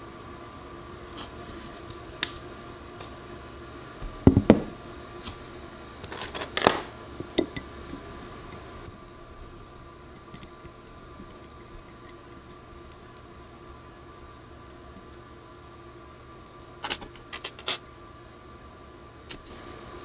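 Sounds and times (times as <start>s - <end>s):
faint hum: 0.0s - 20.0s
clicks of small hard parts: 16.8s - 17.9s.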